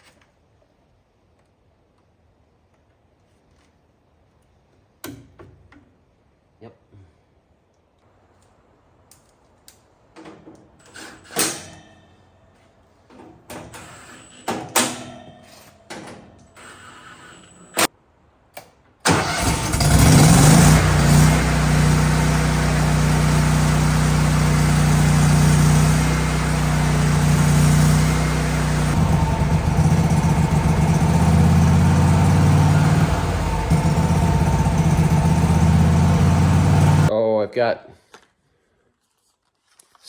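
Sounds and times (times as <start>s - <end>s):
generator engine starting and running: 19.1s - 37.1s.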